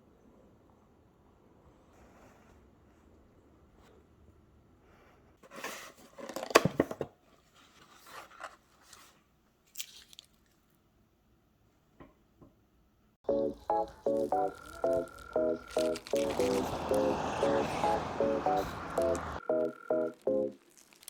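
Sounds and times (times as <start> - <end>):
crinkling handling noise: 5.4 - 10.8, 13.3 - 21.0.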